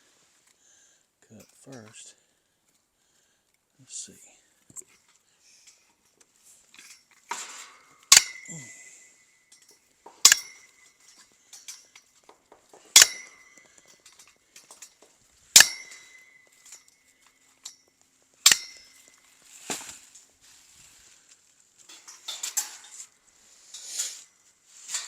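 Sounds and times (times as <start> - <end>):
steel wire snapping: 6.8 - 8.8, 9.5 - 20.2, 21.8 - 24.3
cut wire ringing: 7.3 - 12.0, 12.9 - 19.2.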